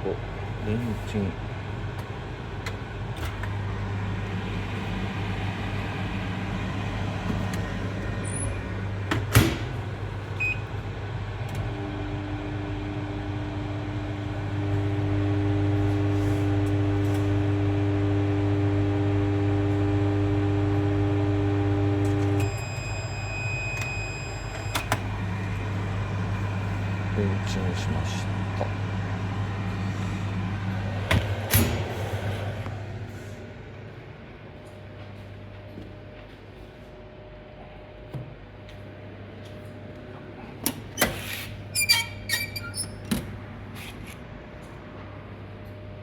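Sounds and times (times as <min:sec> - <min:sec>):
microwave oven humming: 0:00.0 - 0:46.0
microwave beeps: 0:10.4 - 0:10.7, 0:21.7 - 0:25.0.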